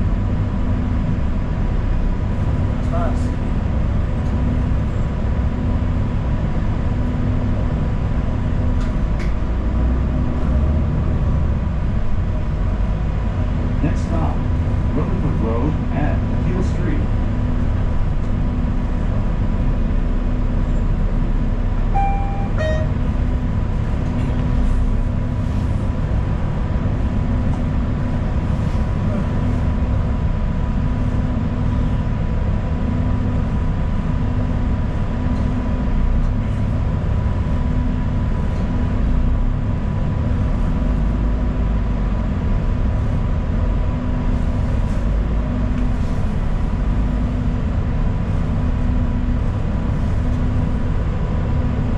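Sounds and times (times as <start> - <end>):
bus engine and road rumble: 0.0 - 51.9
two-note electronic chime: 21.9 - 23.2.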